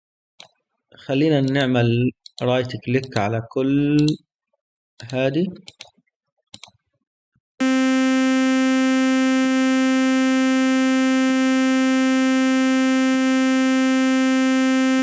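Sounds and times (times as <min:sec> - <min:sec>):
synthesizer steady note: 0:07.6 - 0:15.0.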